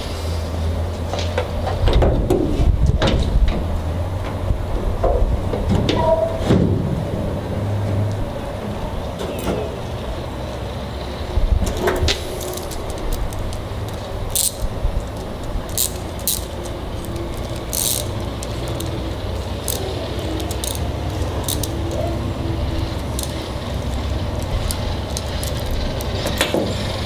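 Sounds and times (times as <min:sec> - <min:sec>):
steady low rumble: 0:00.0 - 0:27.0
metallic clicks and clinks of tools: 0:11.8 - 0:22.2, 0:22.9 - 0:26.7.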